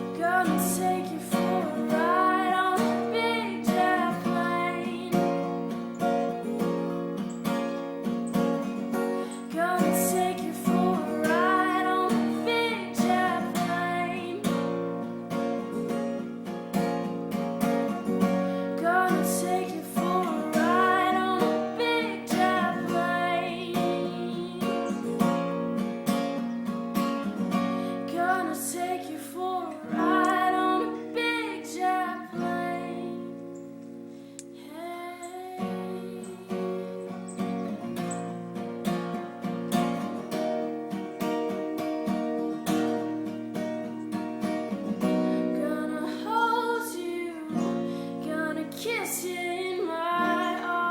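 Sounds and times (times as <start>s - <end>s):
woman singing: 0.0s - 5.9s, 9.2s - 15.2s, 17.8s - 25.7s, 27.4s - 33.7s, 34.4s - 37.3s, 45.0s - 50.9s
strummed acoustic guitar: 0.0s - 50.9s.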